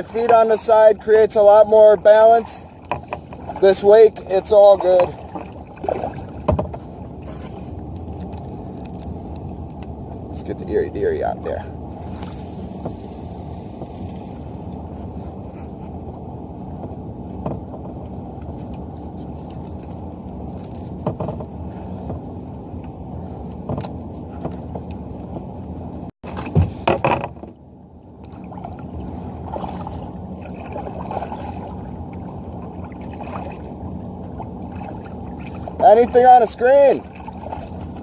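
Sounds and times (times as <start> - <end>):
knocks and clatter on kayak: 0.0 - 0.9, 1.5 - 7.6, 16.7 - 18.8, 20.6 - 22.3, 23.6 - 25.5, 26.2 - 27.6
muffled water noise: 0.0 - 38.0.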